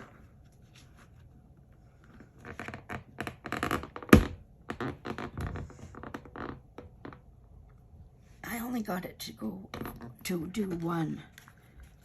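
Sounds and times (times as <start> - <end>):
paper rustling and crinkling: 10.5 - 12.0.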